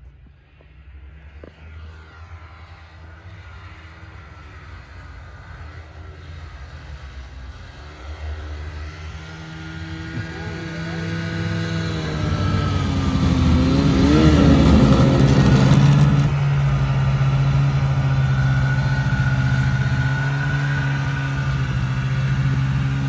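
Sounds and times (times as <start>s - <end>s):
snowmobile engine running: 2.8s - 23.0s.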